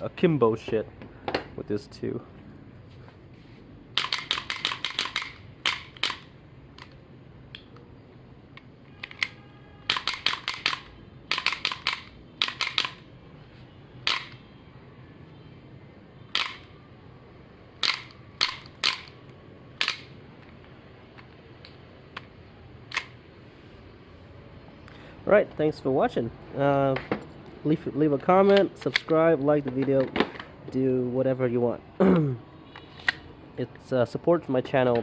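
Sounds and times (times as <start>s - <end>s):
toy pistol plastic clacks: 4.0s - 7.0s, 9.1s - 13.0s, 14.1s - 14.4s, 16.4s - 16.7s, 17.8s - 19.2s, 19.8s - 20.1s.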